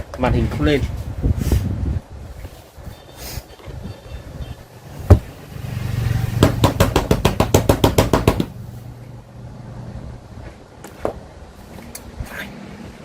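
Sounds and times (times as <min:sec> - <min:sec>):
low electrical hum: 0:07.6 - 0:13.0.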